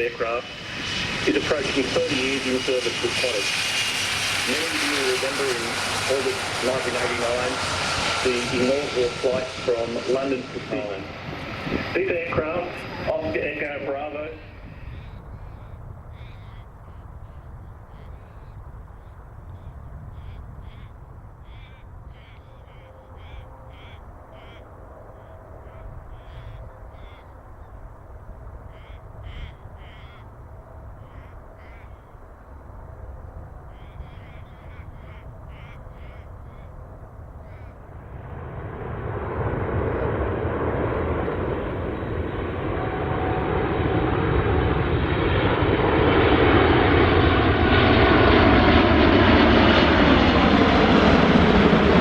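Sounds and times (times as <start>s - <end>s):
jet engines approaching: 0.0s - 52.0s
low rumble: 0.0s - 52.0s
birds cawing: 14.4s - 18.6s, 19.6s - 27.9s, 28.6s - 32.6s, 33.6s - 37.9s.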